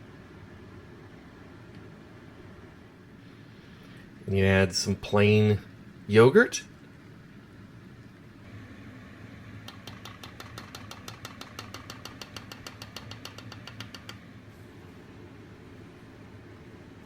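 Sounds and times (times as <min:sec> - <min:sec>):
steady low hum: 0:00.0 - 0:17.0
rapid clicking: 0:09.6 - 0:14.2.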